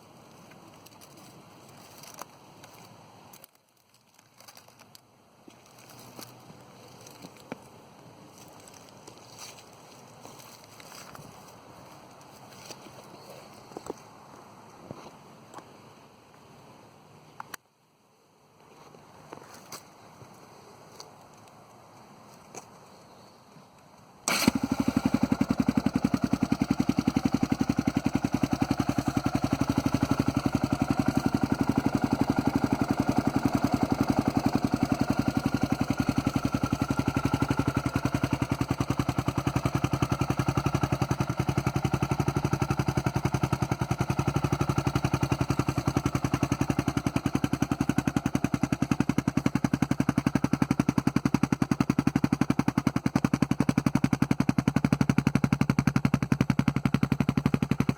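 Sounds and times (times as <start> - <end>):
engine starting and idling: 24.2 - 56.2.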